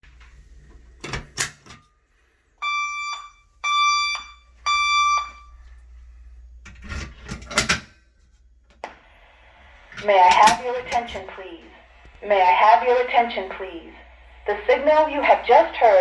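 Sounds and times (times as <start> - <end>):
fire alarm tones: 2.6 - 5.9.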